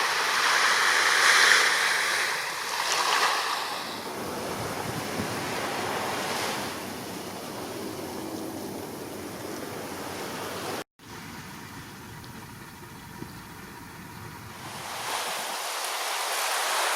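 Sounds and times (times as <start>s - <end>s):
waves washing: 0.0s - 10.8s, 14.5s - 16.9s
wind noise on microphone: 3.7s - 10.8s, 11.4s - 15.4s.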